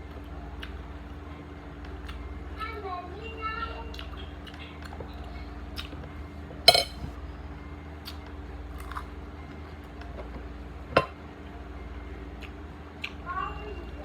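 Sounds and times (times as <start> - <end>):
steady low hum: 5.5 - 8.0
utensil clinking against dish: 6.7 - 7.1.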